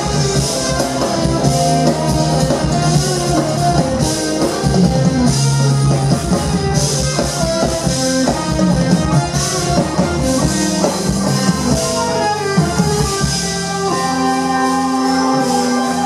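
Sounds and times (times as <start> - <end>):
jazz fusion band playing: 0.0 - 16.0.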